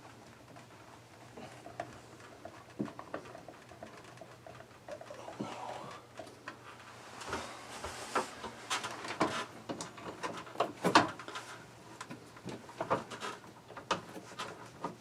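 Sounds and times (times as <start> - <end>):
vent fan parts clicking and knocking: 0.0 - 15.0.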